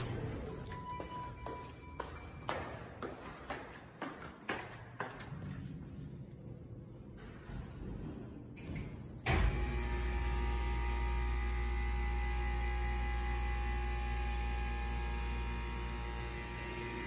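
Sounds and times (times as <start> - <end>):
elevator pump motor running: 9.2 - 17.0.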